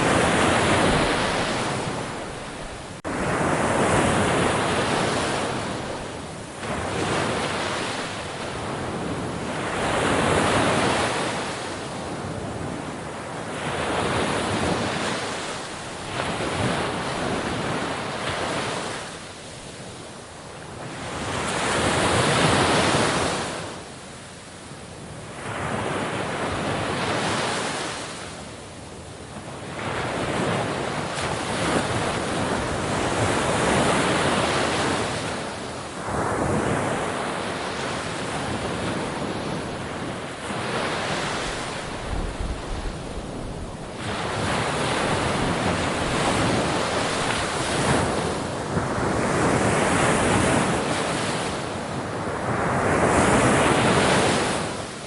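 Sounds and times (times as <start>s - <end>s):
wind on microphone: 0.0s - 23.7s, 29.3s - 55.0s
sea waves breaking on shore: 0.0s - 55.0s.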